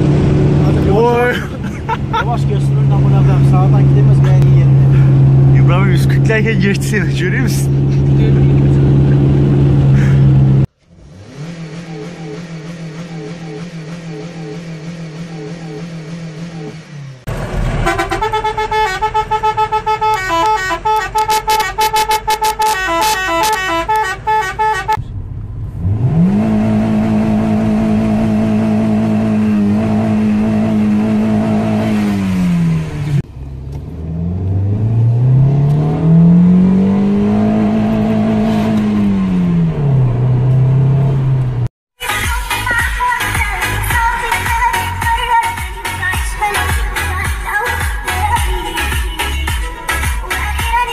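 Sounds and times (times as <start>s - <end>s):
car engine revving: 0.0s - 41.7s
musical car air horn: 17.8s - 25.0s.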